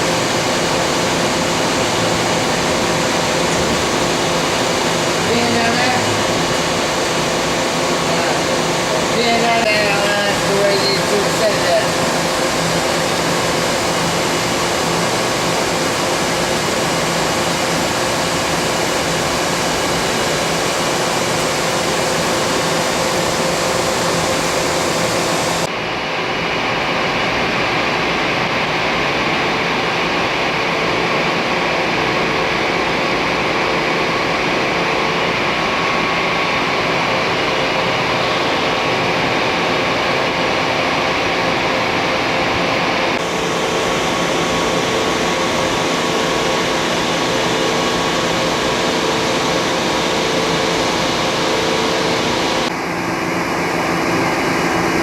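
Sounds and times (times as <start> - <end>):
machinery hum: 0.0 - 55.0.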